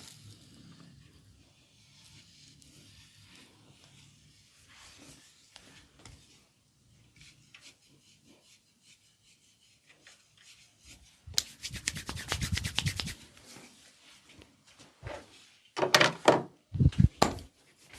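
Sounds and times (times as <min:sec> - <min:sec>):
fast sharp massage strokes: 0:10.8 - 0:13.3
hands rubbing over skin: 0:11.3 - 0:13.6.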